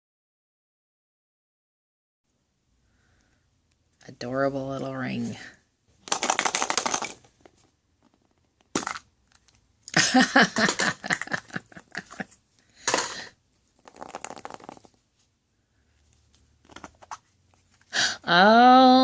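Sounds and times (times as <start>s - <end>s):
crinkling packaging wrappers: 6.0s - 7.6s, 13.8s - 15.0s.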